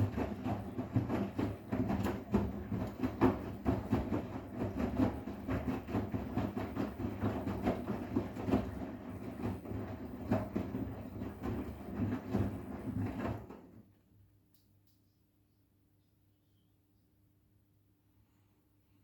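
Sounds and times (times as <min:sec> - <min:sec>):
washing machine drum rumbling: 0:00.0 - 0:13.8
knocks and swishes of tumbling load: 0:00.0 - 0:13.9.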